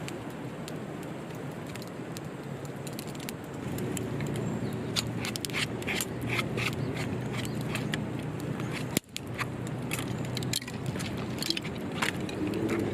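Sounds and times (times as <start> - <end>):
sharp clicks and scraping: 2.8 - 12.9.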